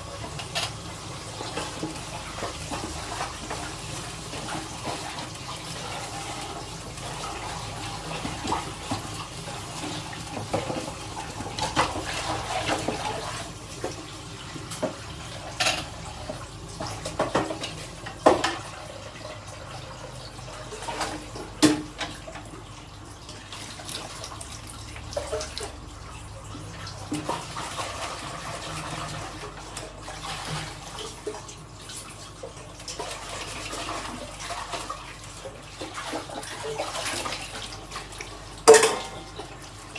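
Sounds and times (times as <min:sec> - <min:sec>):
tap water running: 0:00.0 - 0:39.9
dishes clinking and knocking: 0:38.6 - 0:39.2.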